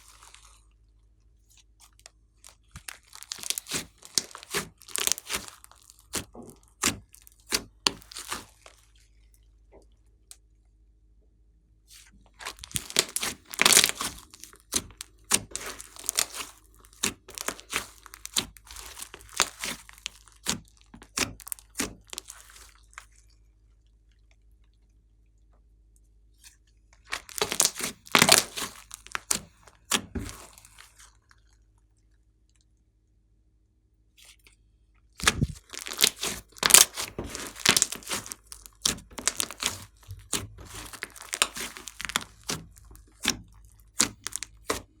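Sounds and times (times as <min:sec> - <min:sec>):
slime squeezed with crackling pops: 0:02.8 - 0:08.6, 0:12.4 - 0:22.8, 0:27.1 - 0:30.7, 0:35.2 - 0:45.0.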